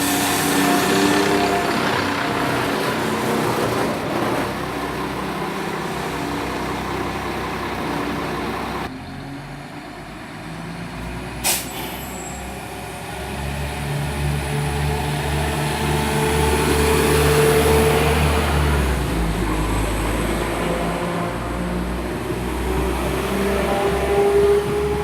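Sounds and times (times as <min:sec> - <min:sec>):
train engines idling: 0:00.0 - 0:08.9.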